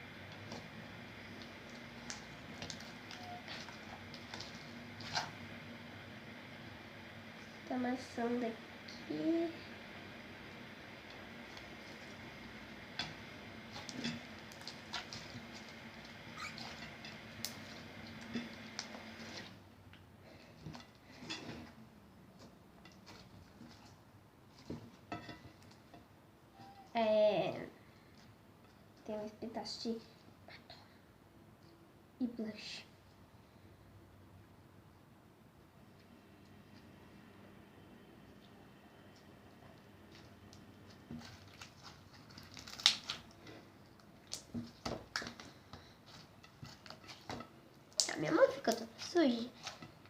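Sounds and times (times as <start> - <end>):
hands squeezing sticky slime: 41.2 - 43.4.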